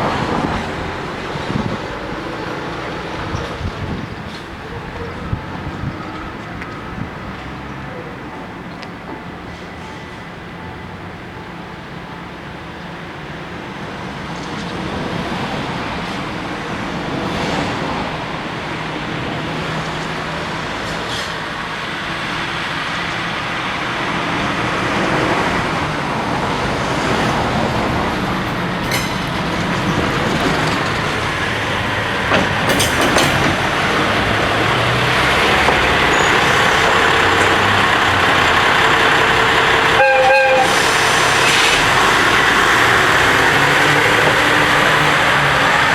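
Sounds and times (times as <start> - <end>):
freight train running: 0.0 - 45.9
train horn toot: 39.2 - 42.8.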